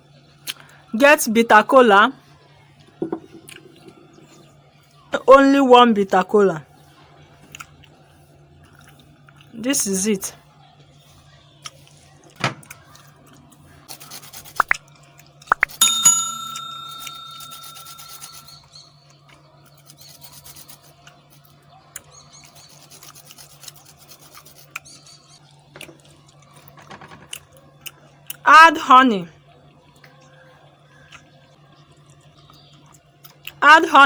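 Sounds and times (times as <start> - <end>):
utensils clicking in a dish: 15.5 - 18.6
metallic clink ringing: 15.8 - 18.6.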